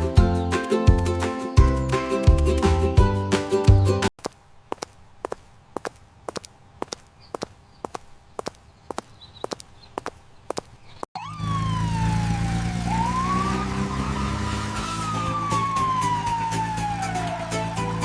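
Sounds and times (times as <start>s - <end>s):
siren wailing: 11.2s - 18.0s.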